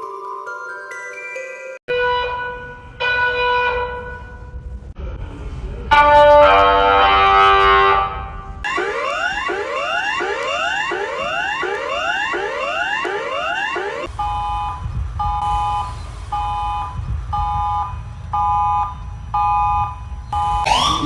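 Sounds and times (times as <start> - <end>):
whooping alarm tone: 8.7 - 15.6, 19.4 - 21.0.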